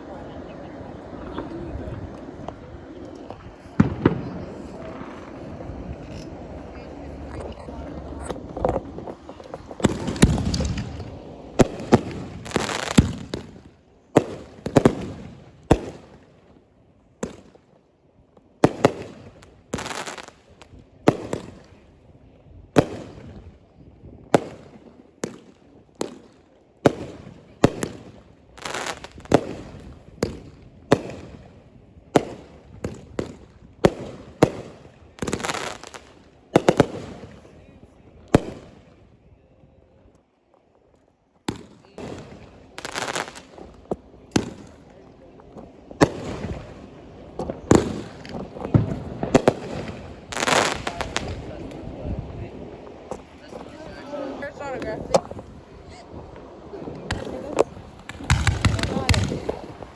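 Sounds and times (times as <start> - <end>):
fireworks bangs with echo: 3.3 - 6.0, 8.6 - 16.3, 17.2 - 17.7, 18.6 - 21.9, 22.7 - 23.6, 24.3 - 37.6, 38.3 - 38.8, 41.5 - 44.9, 45.5 - 52.0, 56.9 - 59.9.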